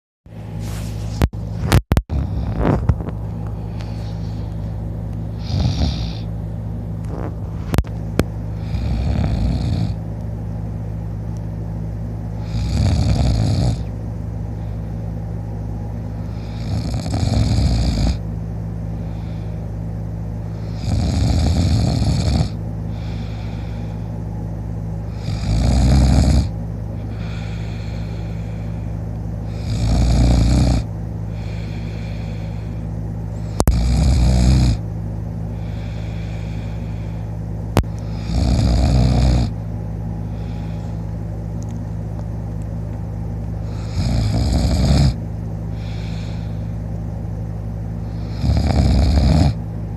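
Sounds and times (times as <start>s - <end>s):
low hum: 0.3s - 48.5s, 49.4s - 49.9s
man snoring: 1.7s - 2.8s, 5.3s - 6.3s, 8.6s - 10.0s, 12.4s - 13.9s, 16.2s - 18.2s, 20.4s - 24.1s, 25.0s - 34.8s, 38.0s - 39.6s, 43.6s - 46.7s, 48.0s - 49.6s.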